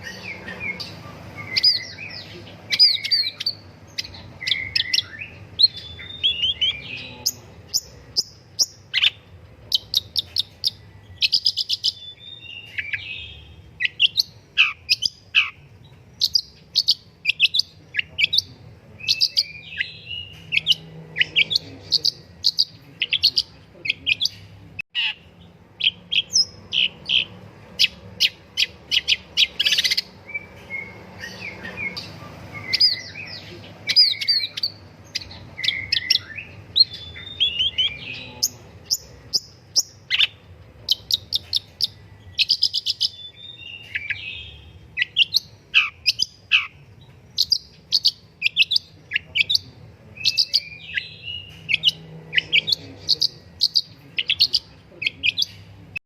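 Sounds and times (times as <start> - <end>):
bird singing chirps and trills: 0.0 - 56.0.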